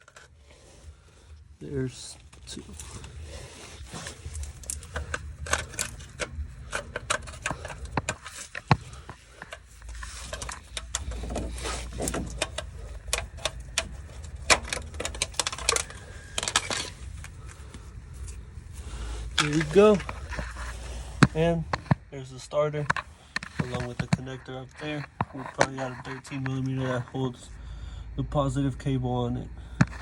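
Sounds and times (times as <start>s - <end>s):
metal clicks taps and rattles: 4.3s - 17.6s.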